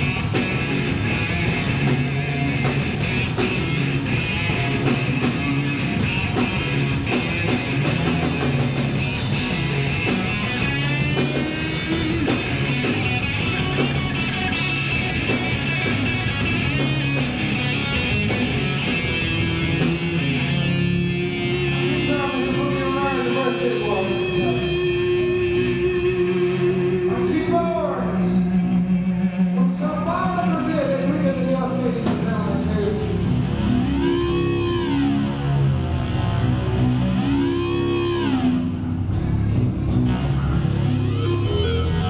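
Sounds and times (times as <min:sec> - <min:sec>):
electric guitar: 0:00.0 - 0:42.0
rock band playing: 0:00.0 - 0:42.0.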